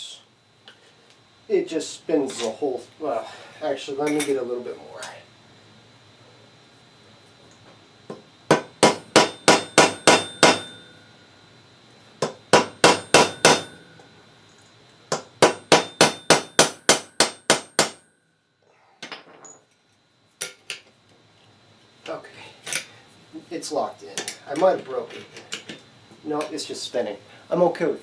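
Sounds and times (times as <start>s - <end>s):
hammer striking steel: 8.5s - 11.0s, 12.2s - 14.1s, 15.1s - 18.1s.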